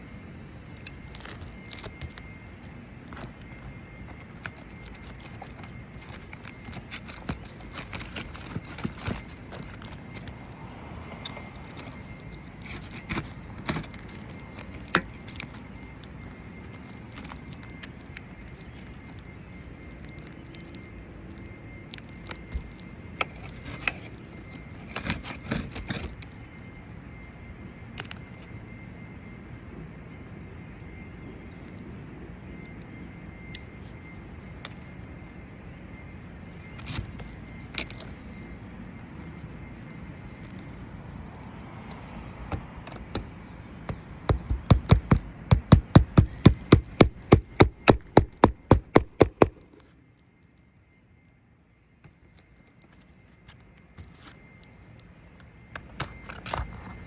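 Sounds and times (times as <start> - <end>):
steady background noise: 0.0 - 57.0
hammer striking roofing nails: 44.3 - 49.6.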